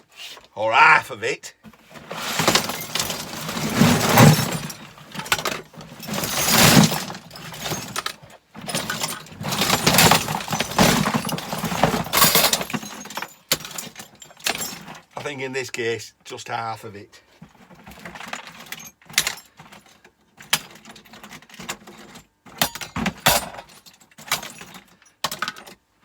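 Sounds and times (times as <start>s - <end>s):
scrap clattering onto workbench: 1.7s - 15.0s.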